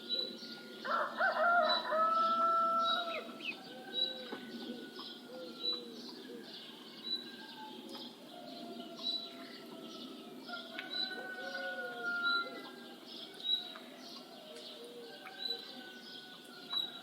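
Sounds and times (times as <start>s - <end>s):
bird cooing: 0.0s - 17.0s
birds chirping: 0.0s - 17.0s.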